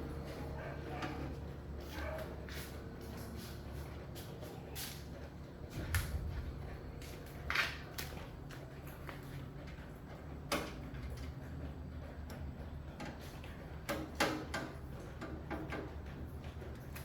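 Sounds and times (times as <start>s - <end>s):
steady low hum: 5.6s - 9.0s.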